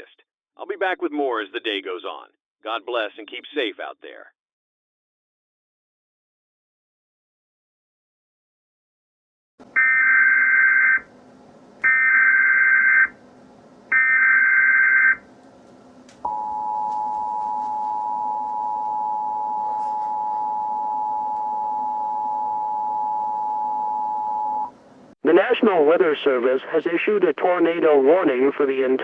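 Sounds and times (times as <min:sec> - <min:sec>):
steady two-tone attention signal: 0:16.3 - 0:24.7.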